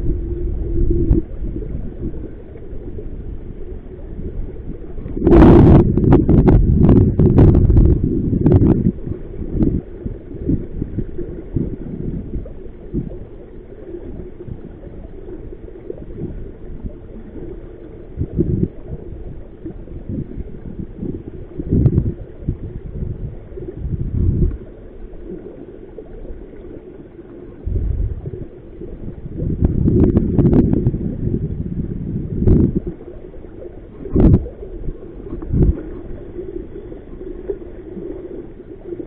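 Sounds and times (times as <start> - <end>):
wind rumbling on microphone: 0.0 - 26.7, 27.5 - 39.0
river water slapping boat: 32.4 - 39.0.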